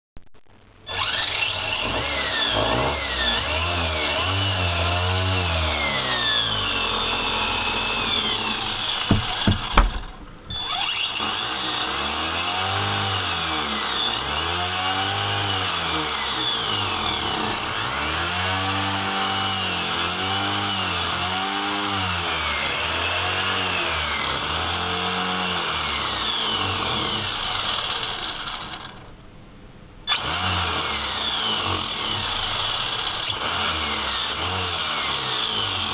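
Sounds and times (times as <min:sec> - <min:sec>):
rc car motor whine: 0:00.9 - 0:29.1, 0:30.1 - 0:35.9
sharp knocks: 0:08.0 - 0:10.7.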